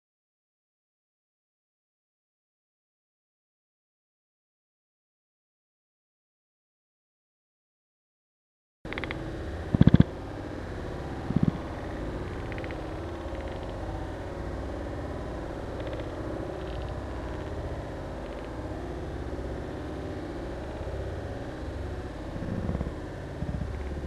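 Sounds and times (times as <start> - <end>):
low rumbling background noise: 8.9 - 24.0.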